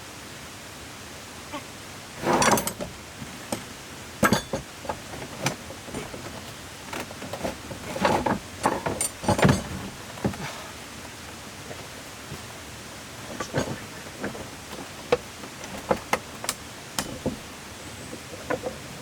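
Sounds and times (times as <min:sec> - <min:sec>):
hard objects knocking and scraping: 0:02.2 - 0:10.6, 0:13.2 - 0:17.6.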